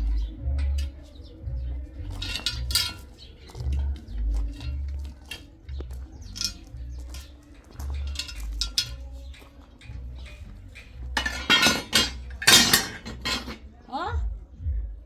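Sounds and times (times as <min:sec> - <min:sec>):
dishes and utensils clattering: 0:02.0 - 0:13.7.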